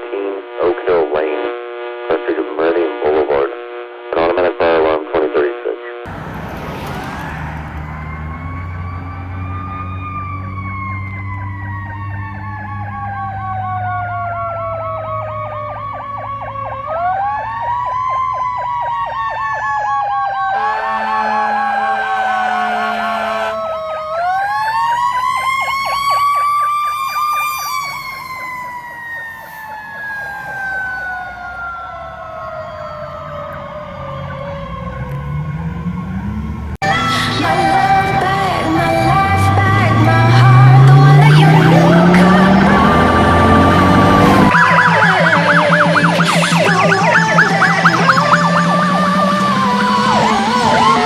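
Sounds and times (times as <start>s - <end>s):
air horn blast: 1.4s - 2.2s, 20.4s - 23.8s, 37.1s - 51.0s
siren wailing: 6.0s - 51.0s
siren yelp warbling: 6.0s - 51.0s.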